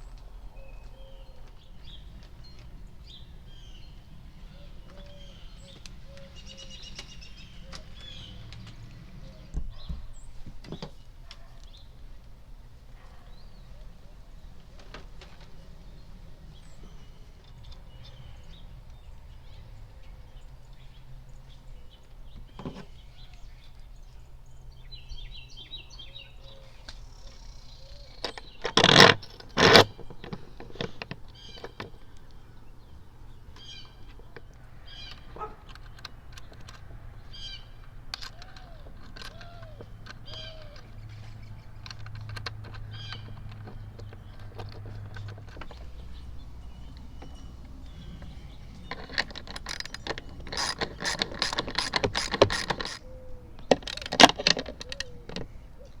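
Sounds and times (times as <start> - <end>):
birds chirping faintly: 0.0 - 56.0
small clicks and knocks: 33.5 - 55.6.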